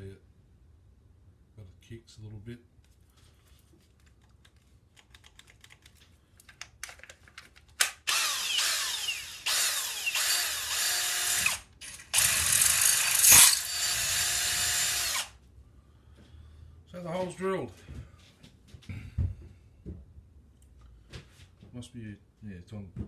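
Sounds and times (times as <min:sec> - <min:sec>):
cordless drill drilling metal: 0:07.8 - 0:15.4.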